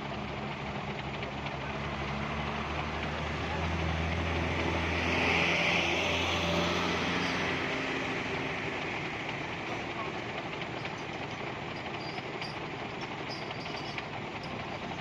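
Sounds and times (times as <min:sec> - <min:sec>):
truck diesel engine passing: 0:01.3 - 0:15.0.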